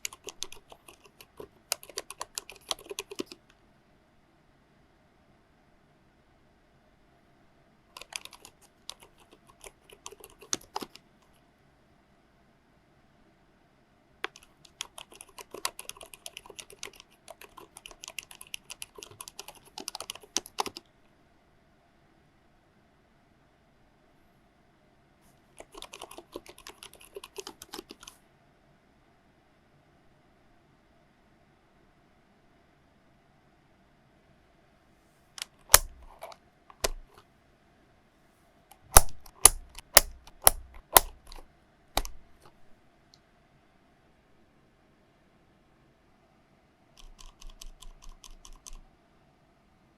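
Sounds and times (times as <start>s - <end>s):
mechanical keyboard typing: 0.0s - 3.4s, 8.0s - 11.0s, 14.2s - 20.9s, 25.6s - 28.2s, 35.4s - 37.2s, 38.7s - 42.6s, 47.0s - 48.8s.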